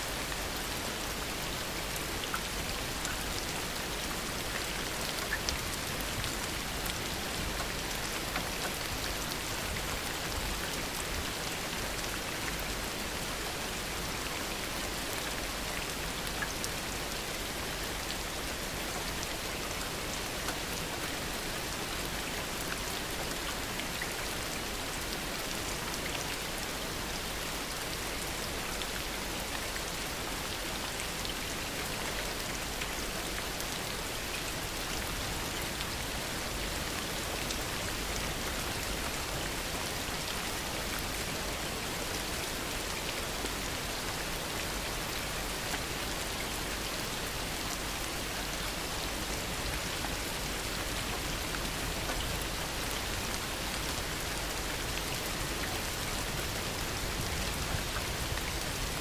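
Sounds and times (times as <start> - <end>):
heavy rain falling: 27.3 - 59.0.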